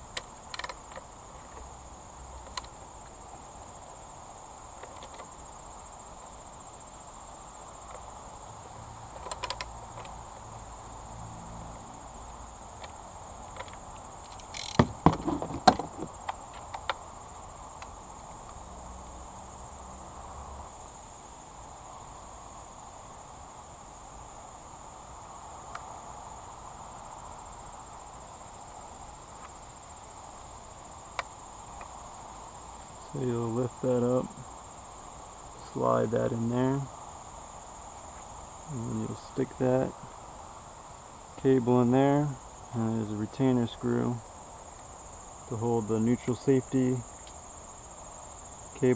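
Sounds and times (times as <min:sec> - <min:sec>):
high insect trill: 0:00.0 - 0:48.9
hand tools clinking and knocking: 0:14.4 - 0:16.1.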